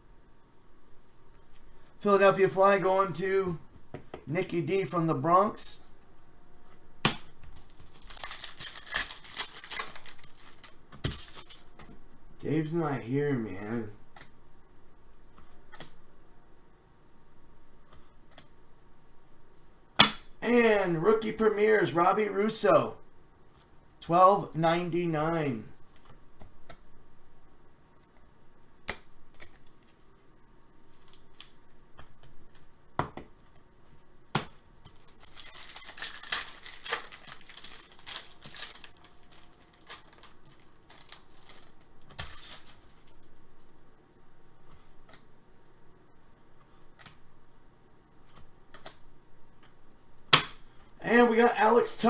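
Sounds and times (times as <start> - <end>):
foil pack crinkling and tearing: 7.5 - 11.7, 35.0 - 43.3.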